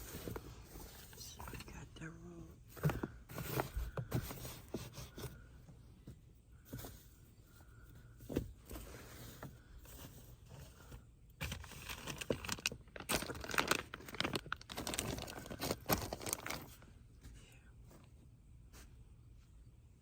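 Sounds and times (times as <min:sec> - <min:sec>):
items crinkling and rustling: 0:00.0 - 0:01.9, 0:02.6 - 0:19.4.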